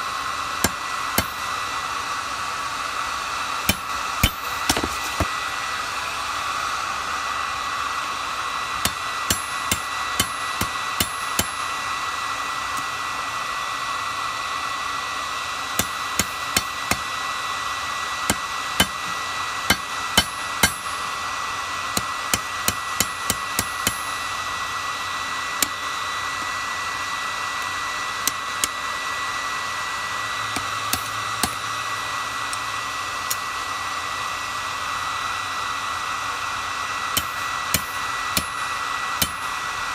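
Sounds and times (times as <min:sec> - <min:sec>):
hammer striking steel on anvil: 0:00.6 - 0:01.4, 0:03.7 - 0:05.3, 0:08.8 - 0:11.7, 0:15.8 - 0:17.1, 0:18.3 - 0:21.0, 0:22.0 - 0:24.2, 0:37.2 - 0:39.5
thin whine: 0:03.5 - 0:13.4, 0:15.6 - 0:34.4.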